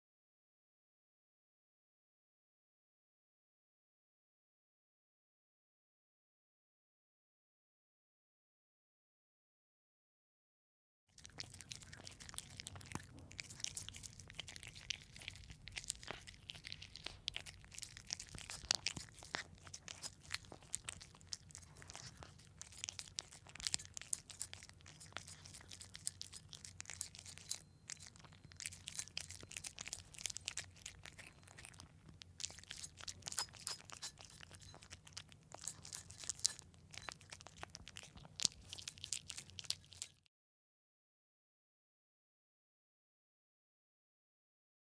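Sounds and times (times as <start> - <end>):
cat chewing wet food: 11.2 - 40.3.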